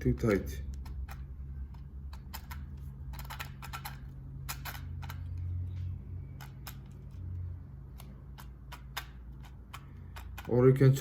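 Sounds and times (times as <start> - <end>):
gears clicking and ticking: 0.7 - 5.5, 7.9 - 11.0.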